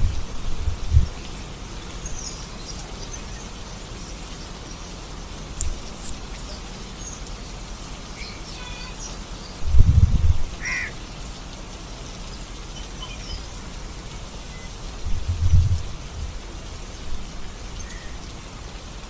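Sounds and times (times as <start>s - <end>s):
steady rain falling: 0.0s - 19.0s
bird calls: 2.0s - 9.6s, 10.6s - 11.0s.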